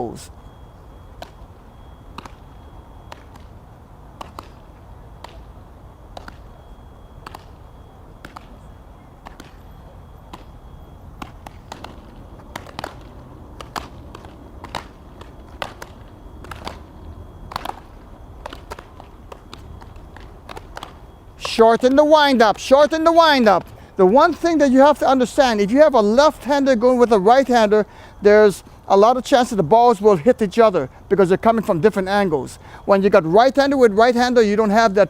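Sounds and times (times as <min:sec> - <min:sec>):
balls smacking into gloves: 0:01.2 - 0:01.4, 0:02.1 - 0:02.4, 0:04.2 - 0:04.6, 0:06.1 - 0:06.5, 0:07.2 - 0:07.5, 0:08.2 - 0:08.6, 0:09.2 - 0:09.6, 0:11.2 - 0:16.9, 0:17.5 - 0:22.0.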